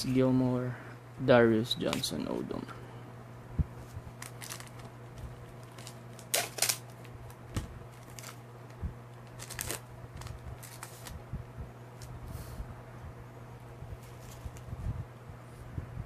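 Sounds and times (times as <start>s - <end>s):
low hum: 0.0s - 16.0s
cards and foil wrapper crinkling: 4.1s - 11.2s.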